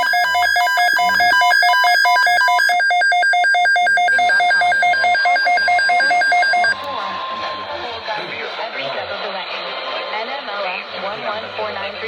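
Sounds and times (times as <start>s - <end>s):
rapid pulsing alarm beep: 0.0s - 7.9s.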